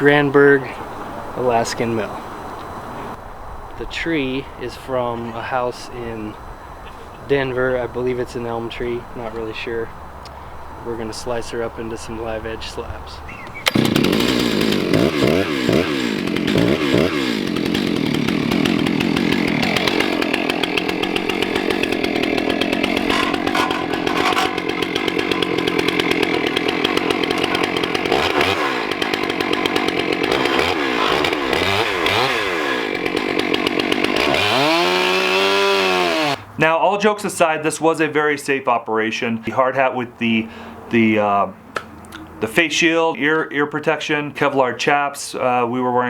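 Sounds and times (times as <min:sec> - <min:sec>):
chainsaw revving: 0:13.5 - 0:36.5.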